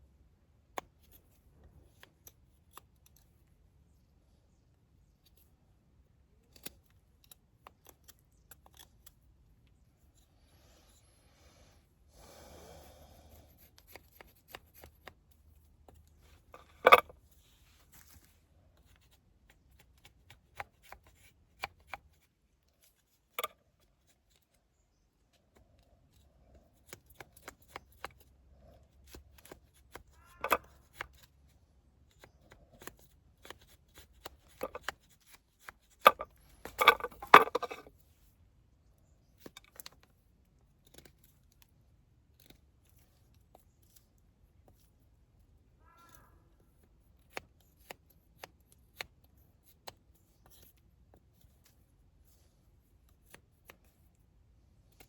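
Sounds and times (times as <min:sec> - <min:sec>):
small objects clicking and tapping: 0:13.6 - 0:17.2, 0:24.3 - 0:31.4, 0:32.1 - 0:38.0, 0:39.3 - 0:44.0.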